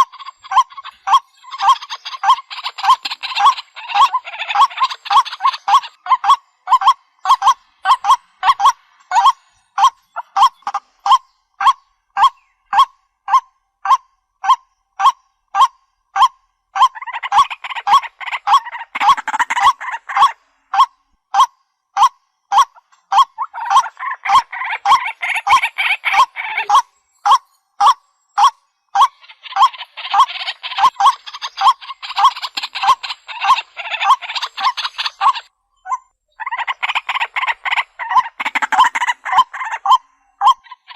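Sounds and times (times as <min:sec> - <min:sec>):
waterhen calling: 0:00.0 - 0:40.9.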